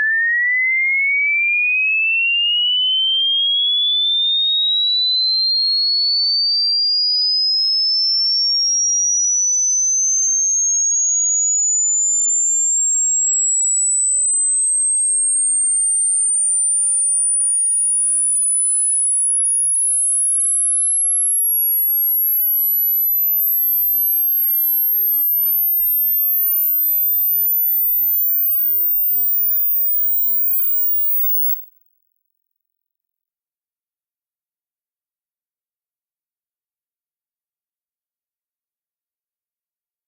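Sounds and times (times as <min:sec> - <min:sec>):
rising sine test tone: 0:02.5 - 0:31.6.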